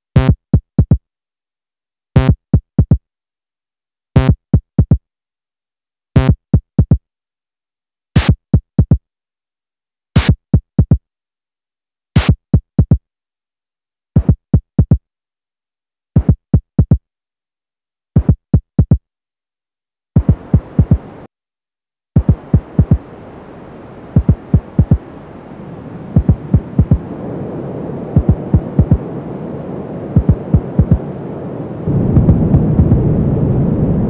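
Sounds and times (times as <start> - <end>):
synthesized kick-drum thumps: 0.2 - 1.0, 2.2 - 3.0, 4.2 - 5.0, 6.2 - 7.0, 8.2 - 9.0, 20.2 - 21.0, 22.2 - 23.0, 24.2 - 25.0, 26.2 - 27.0, 28.2 - 29.0, 30.2 - 31.0, 32.0 - 33.1.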